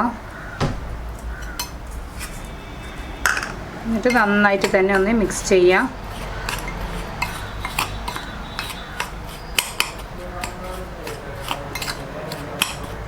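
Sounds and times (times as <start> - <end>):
sharp knocks: 0.4 - 2.1
spoon clinking and scraping bowl: 1.4 - 13.0.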